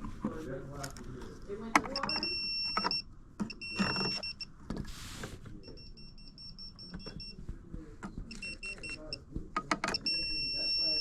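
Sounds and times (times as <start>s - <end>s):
high-pitched electronic beeping: 8.3s - 9.2s, 9.9s - 11.0s.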